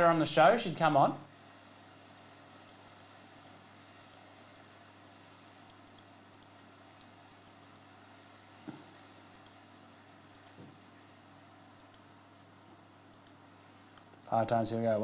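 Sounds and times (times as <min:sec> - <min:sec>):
keyboard and mouse clicks: 0:02.2 - 0:04.7, 0:05.7 - 0:07.6, 0:09.3 - 0:09.6, 0:10.3 - 0:10.7, 0:11.8 - 0:12.1, 0:13.1 - 0:13.4.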